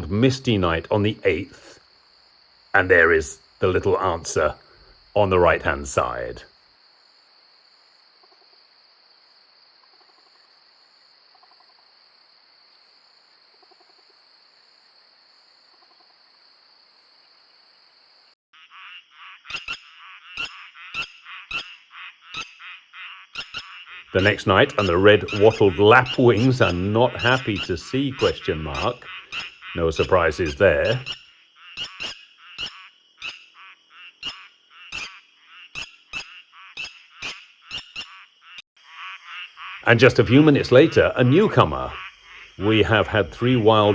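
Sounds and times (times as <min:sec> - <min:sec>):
faint frog calls: 0:00.0 - 0:43.9
insect hum: 0:00.0 - 0:43.9
bird alarm calls: 0:18.6 - 0:43.9.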